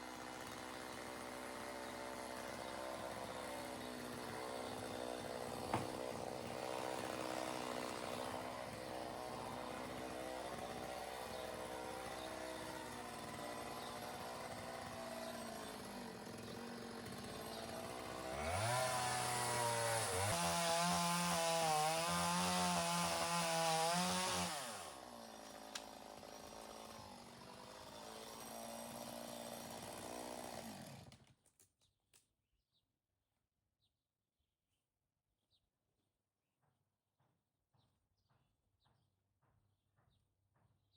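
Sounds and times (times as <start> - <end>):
chainsaw engine revving: 0.0 - 31.2.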